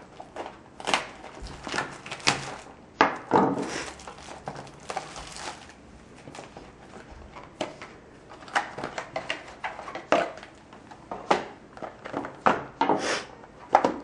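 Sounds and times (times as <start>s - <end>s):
knife cutting open card box: 0.2s - 2.7s.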